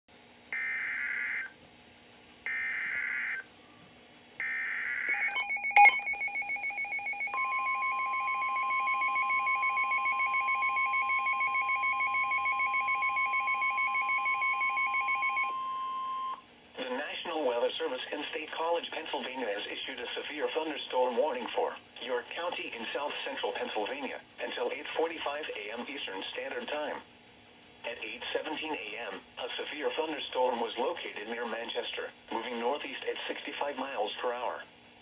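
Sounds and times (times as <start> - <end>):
rapidly pulsing beep alarm: 0.5 - 1.6, 2.5 - 3.4, 4.4 - 16.4
steady warning alarm tone: 0.5 - 1.6, 2.4 - 3.5, 4.4 - 16.5.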